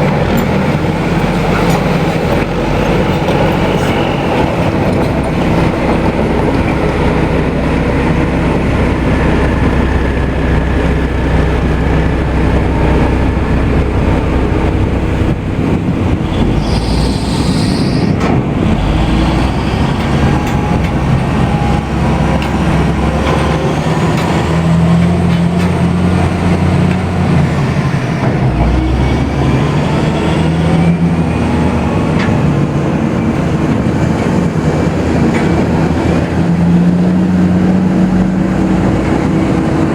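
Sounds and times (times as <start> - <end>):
dump truck diesel engine: 0.0 - 39.9
loud mechanical rattle: 0.0 - 39.9
brief high squeal: 16.5 - 18.2.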